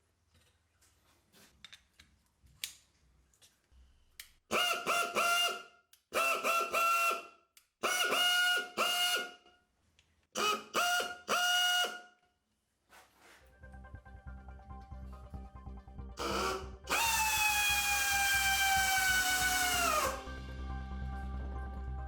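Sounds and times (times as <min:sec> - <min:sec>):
pneumatic screwdriver whining: 0:06.2 - 0:07.2, 0:10.4 - 0:12.0, 0:16.2 - 0:20.2.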